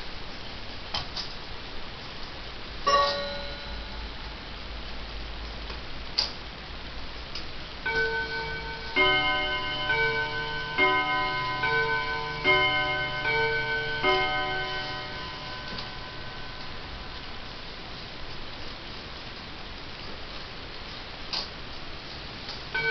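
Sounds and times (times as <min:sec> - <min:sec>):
mantel clock bim-bam chime: 0:02.9 - 0:04.2, 0:07.8 - 0:17.5.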